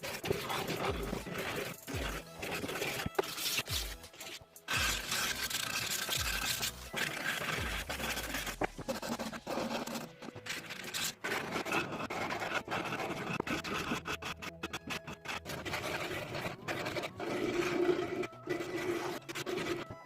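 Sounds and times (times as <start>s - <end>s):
rasping on wood: 0.0s - 20.0s.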